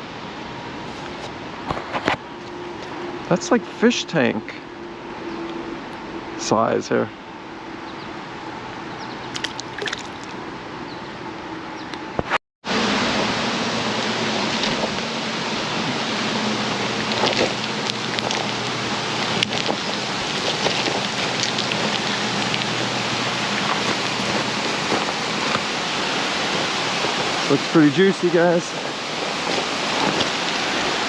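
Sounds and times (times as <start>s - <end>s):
creek water rushing: 0.0s - 11.3s, 12.7s - 31.0s
small water splashes: 9.3s - 10.4s, 13.2s - 31.0s.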